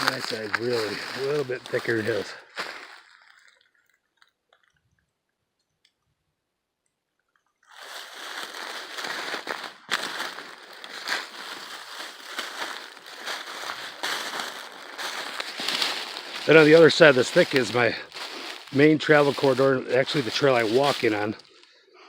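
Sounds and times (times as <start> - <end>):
crunching of brush and dry leaves: 0.0 - 4.0, 7.7 - 21.8.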